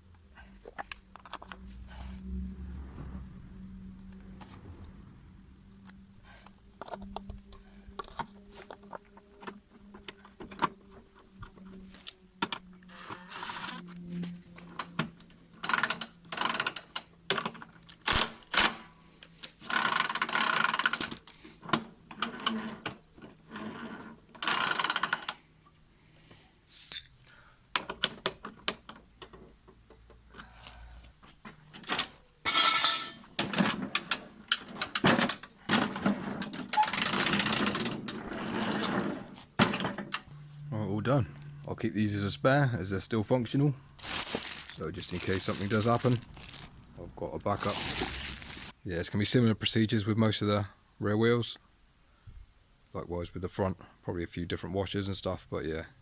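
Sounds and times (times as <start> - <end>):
tools and metal parts clinking: 26.9 - 27.2, 31.7 - 38.3.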